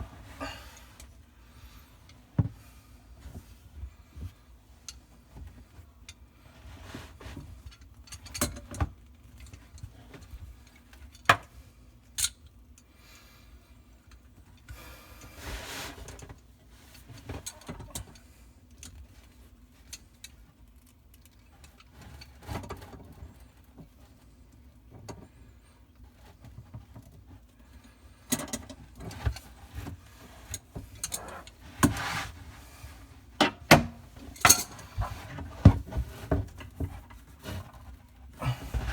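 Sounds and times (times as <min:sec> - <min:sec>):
tools and fittings clicking and clanking: 0:33.4 - 0:37.7.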